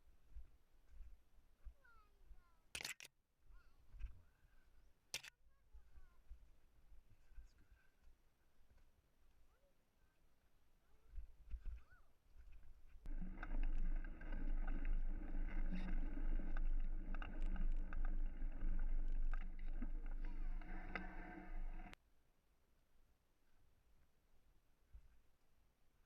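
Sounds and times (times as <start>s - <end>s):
wind and tyre noise: 12.8s - 22.0s.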